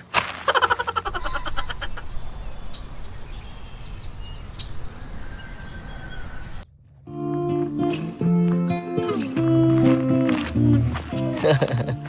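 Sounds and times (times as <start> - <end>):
small birds chirping: 0.5 - 6.7
low outdoor rumble: 1.0 - 11.6
acoustic guitar music: 7.0 - 12.0.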